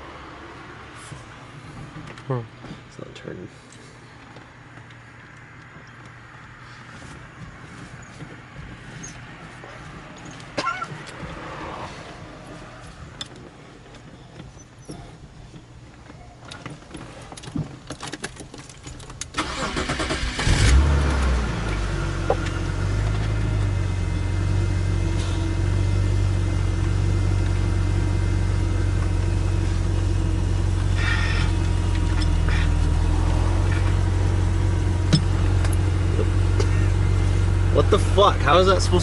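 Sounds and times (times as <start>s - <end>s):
starter motor cranking: 19.3s - 20.9s
car engine revving and idling: 19.4s - 39.0s.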